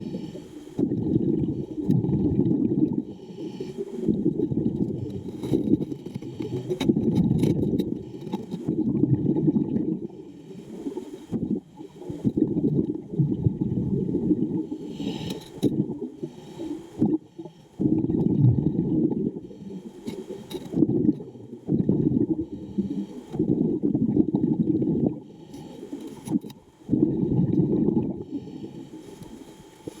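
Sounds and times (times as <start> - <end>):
underwater rumbling and bubbling: 0.0 - 30.0.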